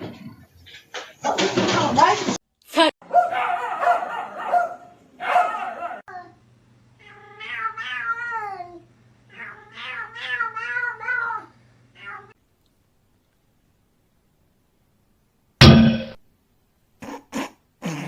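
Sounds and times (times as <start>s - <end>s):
cat meowing: 7.0s - 12.4s.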